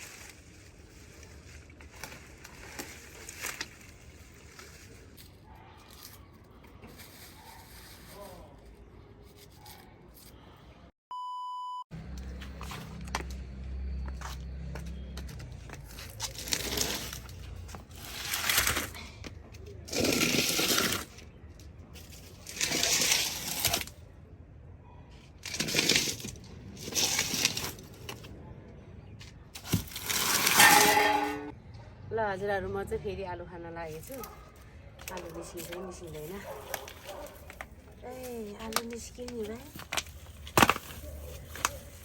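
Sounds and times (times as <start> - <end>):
digging in soil: 0.0 - 10.6, 15.3 - 24.1, 25.2 - 28.3, 29.2 - 31.5, 33.9 - 42.0
short electronic beep: 11.1 - 11.9.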